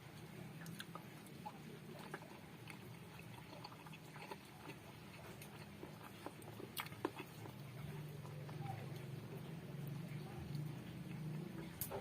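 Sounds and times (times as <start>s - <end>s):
eating clicks and wet smacks: 0.6s - 9.1s.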